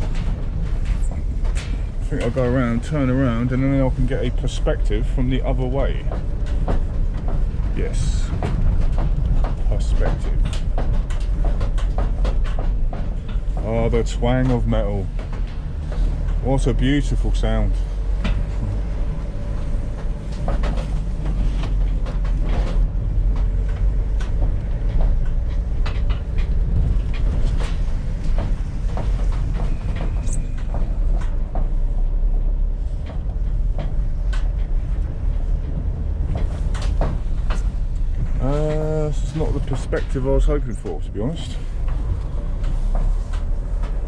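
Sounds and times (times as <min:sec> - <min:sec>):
scrap metal rattling and clanking: 0:00.0 - 0:44.0
van engine and road rumble: 0:00.0 - 0:44.0.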